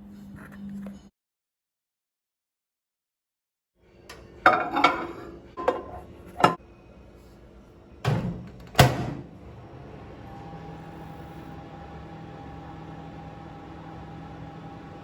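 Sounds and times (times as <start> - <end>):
electric appliance hum: 3.8 - 15.0.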